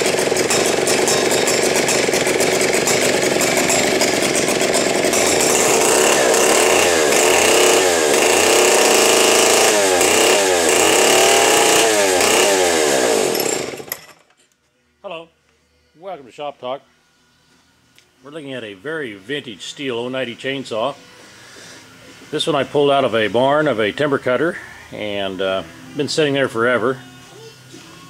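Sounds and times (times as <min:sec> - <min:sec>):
chainsaw revving: 0:00.0 - 0:14.2.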